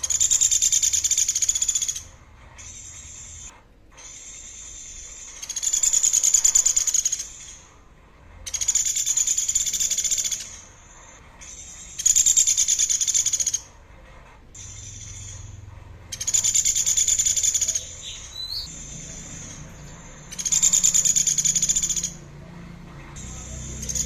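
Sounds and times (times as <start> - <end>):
soft bird calls: 14.6 - 24.0.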